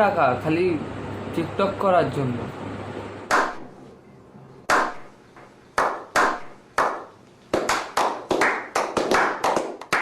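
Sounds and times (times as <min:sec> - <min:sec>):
sharp hand claps: 0:03.3 - 0:03.7, 0:04.7 - 0:05.1, 0:05.8 - 0:10.0.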